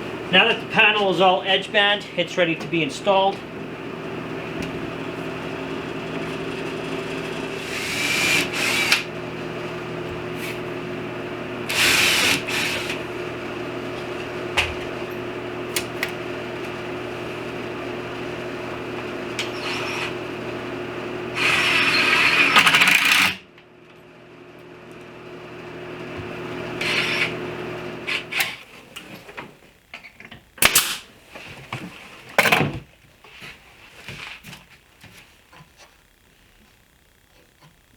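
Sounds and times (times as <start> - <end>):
power tool motor hum: 4.5 - 10.8, 11.5 - 13.5, 18.9 - 23.4, 26.6 - 28.7.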